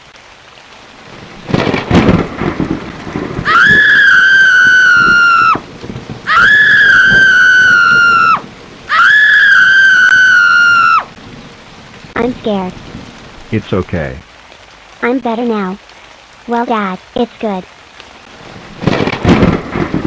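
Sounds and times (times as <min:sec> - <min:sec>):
rain: 0:00.0 - 0:20.0
loud thunderclap: 0:01.0 - 0:13.6, 0:18.3 - 0:20.0
long high-pitched wails: 0:03.4 - 0:05.7, 0:06.3 - 0:11.1.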